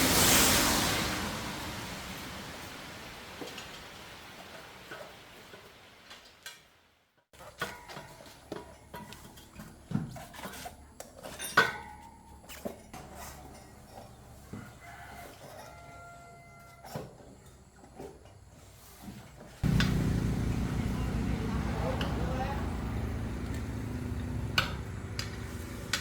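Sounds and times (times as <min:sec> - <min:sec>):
rooster crowing: 0:14.5 - 0:16.9.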